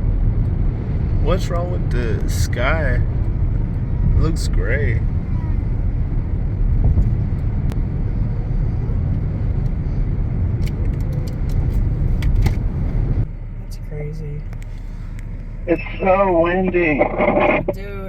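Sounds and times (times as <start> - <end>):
wind buffeting microphone: 3.0 - 13.2.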